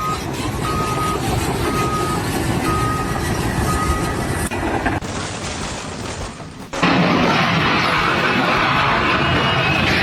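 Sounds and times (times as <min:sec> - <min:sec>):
reversing alarm beeps: 0:00.0 - 0:04.5
diesel engine rumble: 0:00.0 - 0:10.0.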